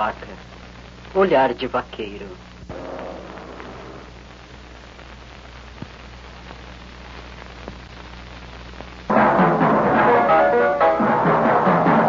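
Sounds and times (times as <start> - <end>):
film soundtrack hiss and hum: 0.0 - 12.0
loud music with drums: 9.1 - 12.0.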